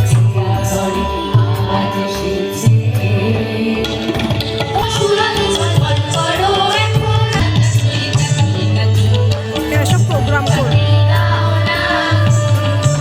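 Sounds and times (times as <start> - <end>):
tabla drumming: 0.0 - 13.0
pulsing bass: 7.4 - 11.4.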